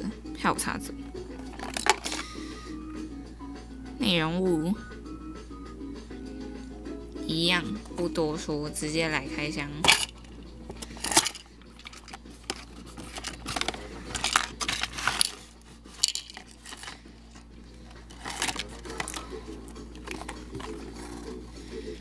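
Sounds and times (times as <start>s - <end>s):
plastic packaging rustling: 1.4s - 2.3s, 9.9s - 21.4s.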